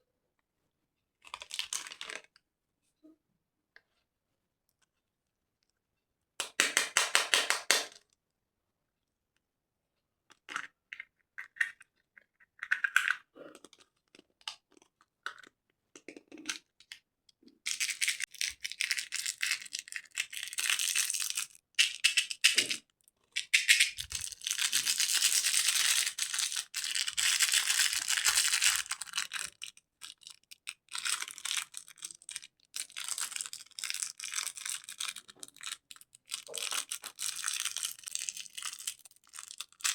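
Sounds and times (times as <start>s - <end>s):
candy wrappers crinkling: 17.7s - 22.8s, 23.4s - 39.9s.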